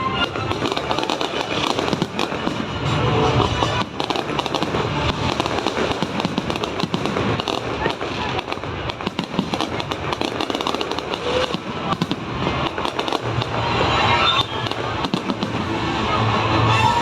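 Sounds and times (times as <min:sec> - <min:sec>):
music: 0:00.0 - 0:07.5, 0:12.0 - 0:17.0
fireworks bursting and crackling: 0:00.0 - 0:17.0.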